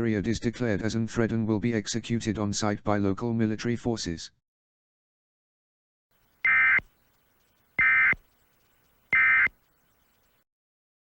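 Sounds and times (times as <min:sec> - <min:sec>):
digital data bursts: 0:06.4 - 0:06.8, 0:07.8 - 0:08.2, 0:09.1 - 0:09.7.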